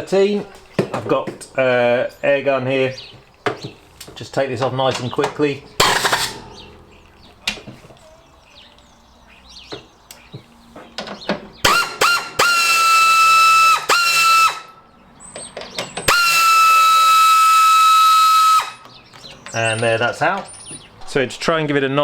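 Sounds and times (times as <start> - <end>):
air ratchet whining: 5.7 - 6.7, 11.6 - 14.7, 16.1 - 18.9
air ratchet blips: 5.8 - 6.8, 11.6 - 14.7, 16.1 - 18.9.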